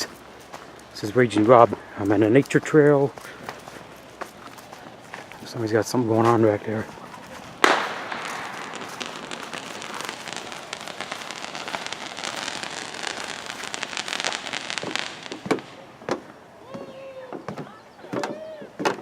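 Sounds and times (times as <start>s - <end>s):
fireworks crackling: 0.0s - 16.4s
fireworks sharp bangs: 7.6s - 16.4s.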